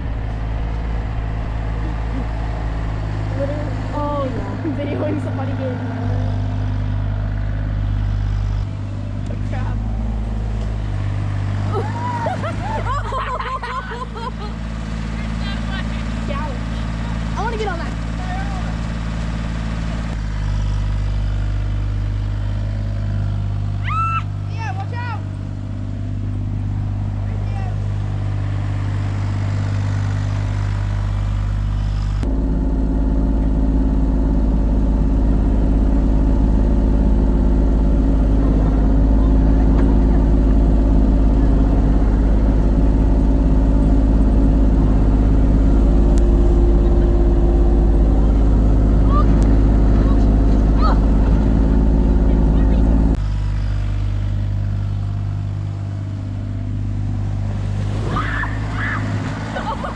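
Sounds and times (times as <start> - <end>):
excavator diesel engine running: 0.0 - 59.9.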